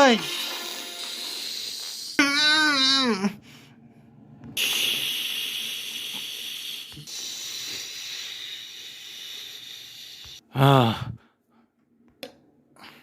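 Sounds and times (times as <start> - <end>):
steady hissing: 4.6 - 10.4.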